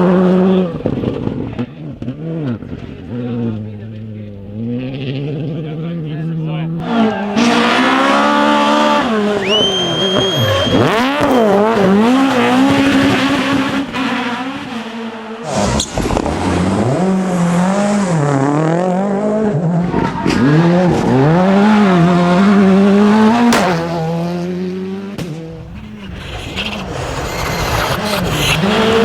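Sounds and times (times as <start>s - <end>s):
rally car engines revving: 0.0s - 29.0s
tyre squeal: 6.8s - 12.9s, 25.7s - 29.0s.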